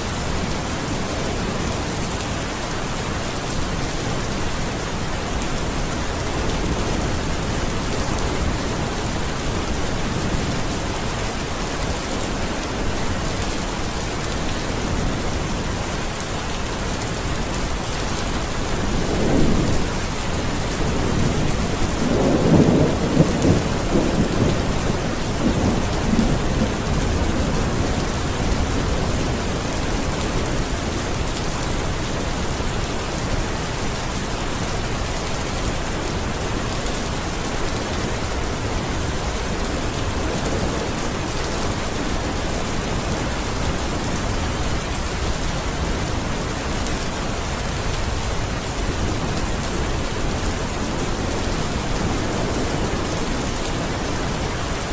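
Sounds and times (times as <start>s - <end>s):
heavy rainfall: 0.0s - 54.9s
thunder rumbling: 17.7s - 31.2s.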